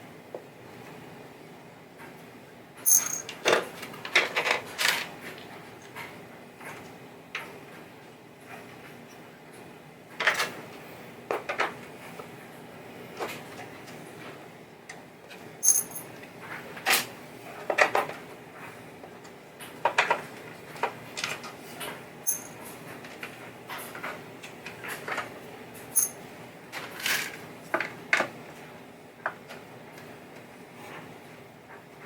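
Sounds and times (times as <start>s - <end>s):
small metal parts clinking: 2.8s - 3.3s, 15.6s - 16.1s, 22.3s - 22.6s, 26.0s - 26.2s.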